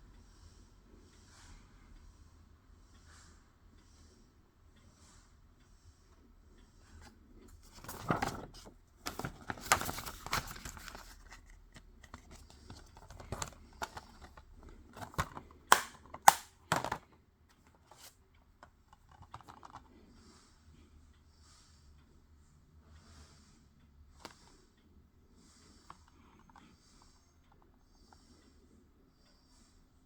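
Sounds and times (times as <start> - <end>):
sharp plastic snaps: 15.0 - 17.1.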